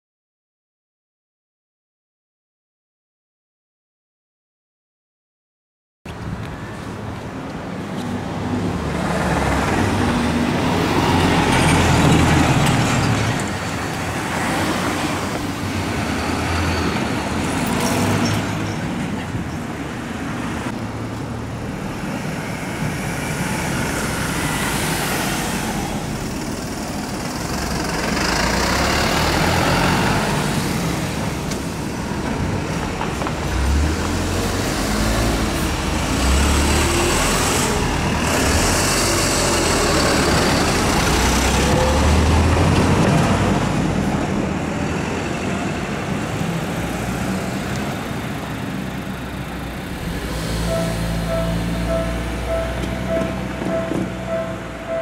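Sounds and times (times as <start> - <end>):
rumble of passing vehicles: 6.1 - 55.0.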